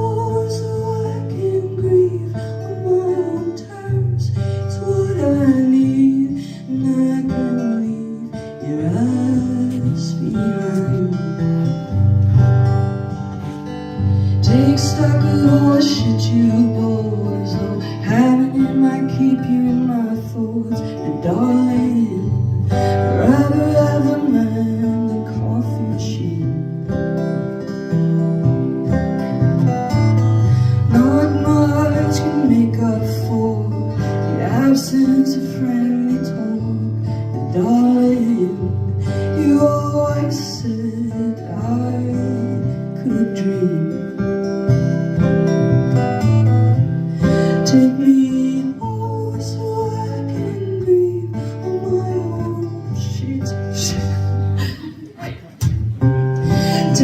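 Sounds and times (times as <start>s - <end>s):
person singing: 0.0s - 11.9s, 14.2s - 26.8s, 30.6s - 44.3s, 47.3s - 57.0s
acoustic guitar strumming: 0.0s - 57.0s.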